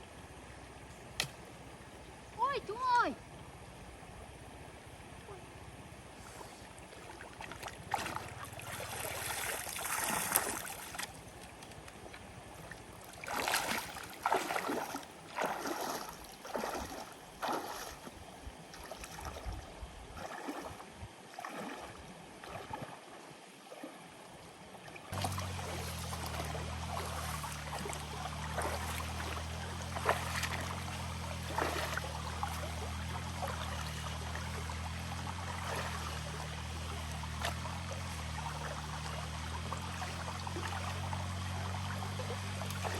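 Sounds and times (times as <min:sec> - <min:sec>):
steady low hum: 0:03.1 - 0:42.9
water sloshing and splashing: 0:06.0 - 0:42.9.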